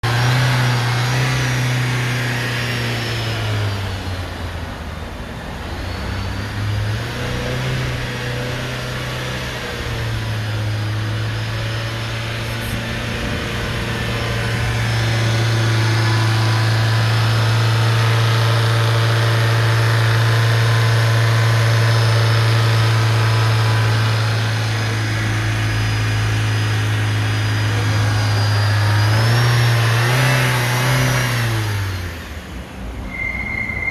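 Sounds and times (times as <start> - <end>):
car engine revving: 0.0 - 33.9.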